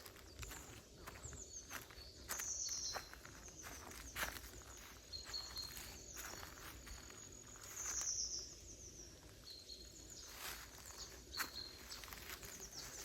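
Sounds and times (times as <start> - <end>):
footsteps crunching dry leaves: 0.0 - 13.0
high bird chirps: 0.4 - 8.6.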